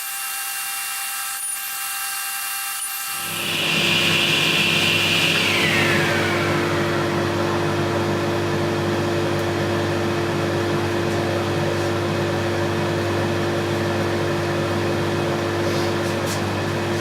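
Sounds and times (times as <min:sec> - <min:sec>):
table saw motor running: 0:02.4 - 0:09.0.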